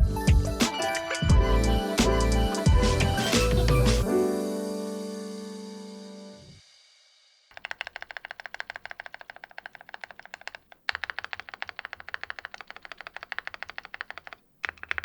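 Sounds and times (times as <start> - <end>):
deeper keyboard key clacks: 7.5 - 15.0
keyboard keys clacking: 7.5 - 15.0.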